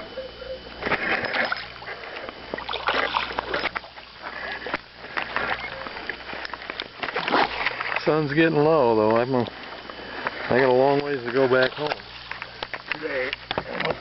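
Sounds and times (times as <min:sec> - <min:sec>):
fish thrashing water splashing: 0:02.5 - 0:04.7.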